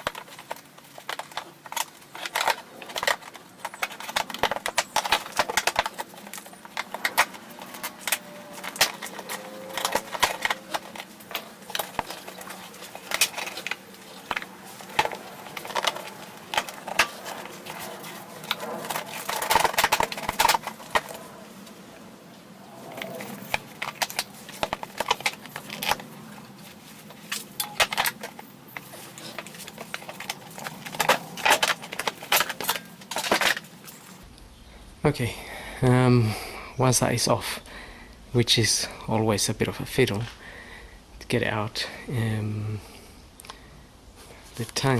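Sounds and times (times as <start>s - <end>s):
plastic cover clicking and knocking: 0.0s - 21.4s, 22.9s - 34.2s.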